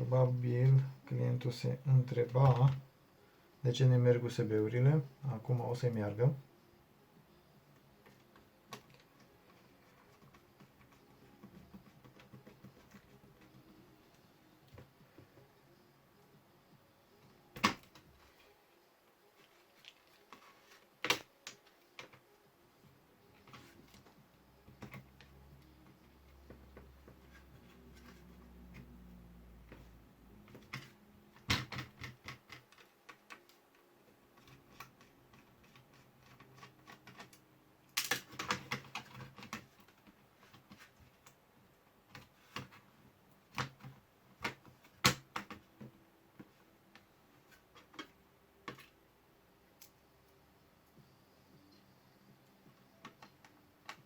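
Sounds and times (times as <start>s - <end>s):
laptop parts clicking and knocking: 8.0s - 13.7s, 17.5s - 18.2s, 21.0s - 22.2s, 23.4s - 33.6s, 34.4s - 41.4s, 42.1s - 49.0s, 52.6s - 54.0s.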